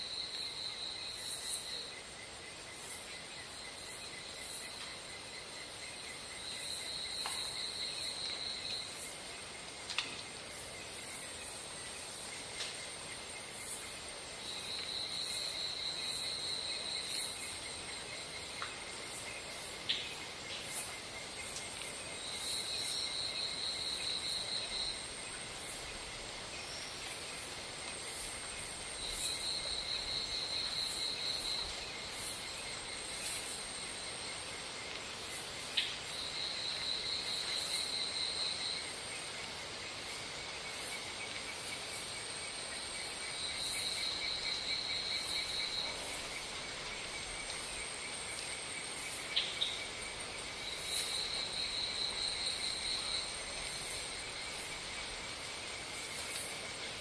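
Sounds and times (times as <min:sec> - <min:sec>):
insects chorus drone: 0:00.0 - 0:57.0
high-pitched insect trill: 0:13.3 - 0:57.0.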